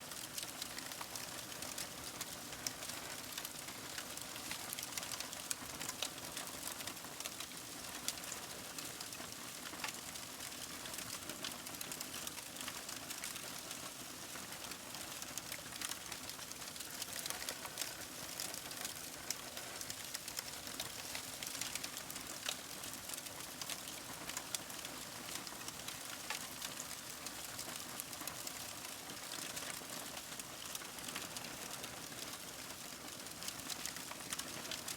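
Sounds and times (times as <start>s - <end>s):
crackles and pops: 0.1s - 34.9s
paper burning flame hiss: 9.5s - 34.9s.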